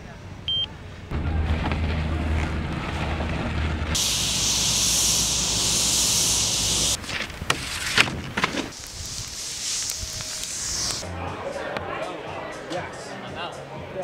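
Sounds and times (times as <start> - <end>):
low steady rumble: 0.5 - 7.0
loud steady hiss: 4.0 - 7.0, 8.7 - 11.0.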